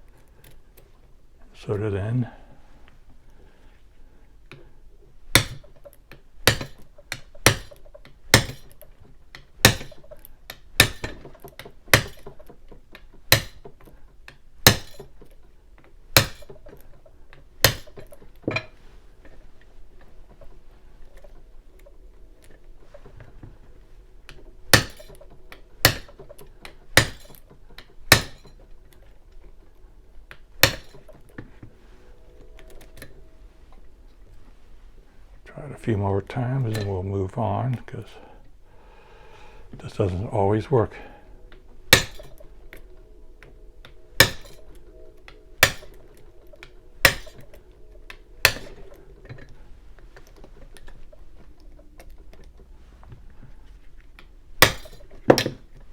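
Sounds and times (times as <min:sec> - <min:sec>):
mallet tapping key in padlock: 0:05.3 - 0:08.9, 0:09.6 - 0:12.5, 0:13.3 - 0:13.7, 0:14.6 - 0:15.2, 0:17.6 - 0:18.2, 0:24.7 - 0:25.2, 0:25.8 - 0:26.4, 0:27.0 - 0:28.5, 0:47.0 - 0:47.5.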